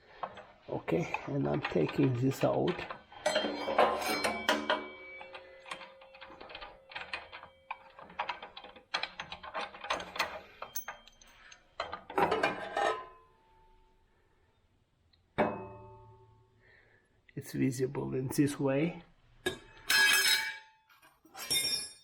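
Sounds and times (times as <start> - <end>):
metal parts clinking and rattling: 1.1 - 13.0.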